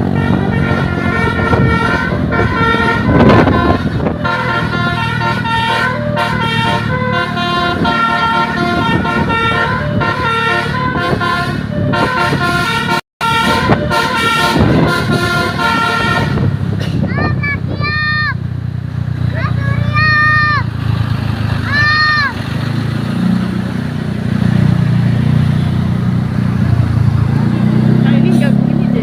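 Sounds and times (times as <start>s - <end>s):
bus horns playing melodies: 0.0s - 17.9s
bus engines humming: 0.0s - 29.0s.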